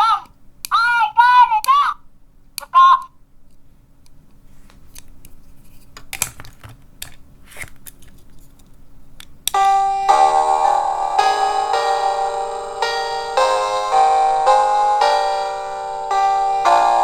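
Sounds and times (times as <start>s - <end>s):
electronic chime melody: 9.6s - 17.0s.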